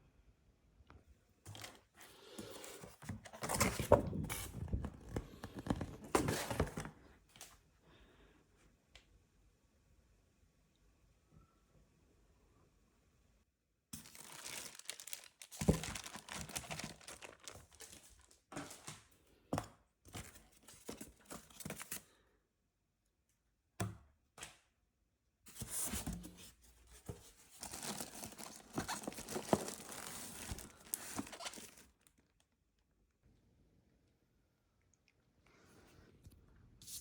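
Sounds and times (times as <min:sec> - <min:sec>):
packaging rustling and ripping: 0:14.0 - 0:18.9, 0:27.5 - 0:32.4.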